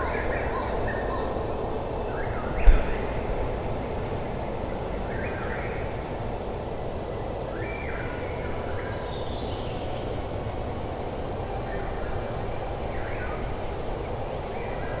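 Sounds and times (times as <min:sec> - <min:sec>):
steady background noise: 0:00.0 - 0:15.0.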